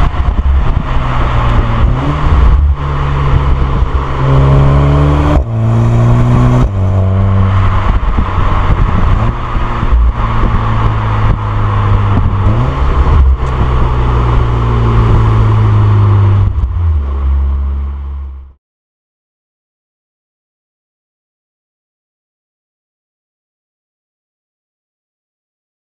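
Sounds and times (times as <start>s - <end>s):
car engine and exhaust revving: 0.0s - 18.6s.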